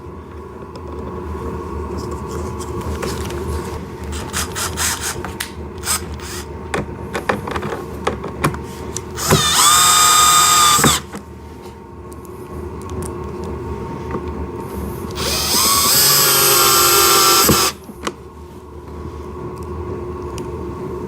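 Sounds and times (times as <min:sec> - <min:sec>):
power drill: 0:04.2 - 0:05.2, 0:05.8 - 0:06.5, 0:09.2 - 0:11.1, 0:15.2 - 0:17.8.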